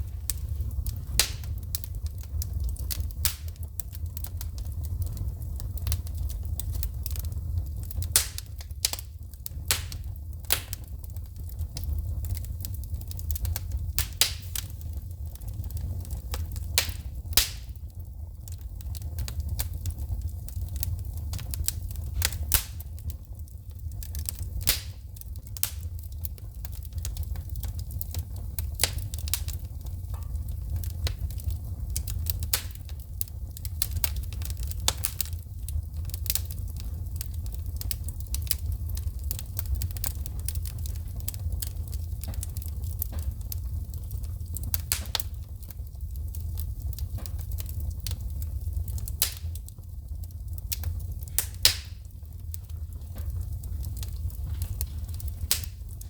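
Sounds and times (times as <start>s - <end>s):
low rumble of fire: 0.0s - 56.0s
wood fire crackling: 0.0s - 56.0s
logs popping and snapping: 51.4s - 52.0s.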